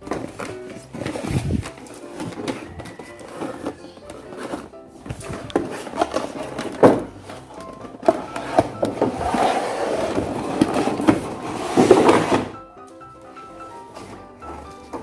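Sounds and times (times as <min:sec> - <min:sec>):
packaging clicks and knocks: 0:00.0 - 0:09.3
packaging rustling and scraping: 0:00.0 - 0:12.7
soft background music: 0:00.0 - 0:15.0.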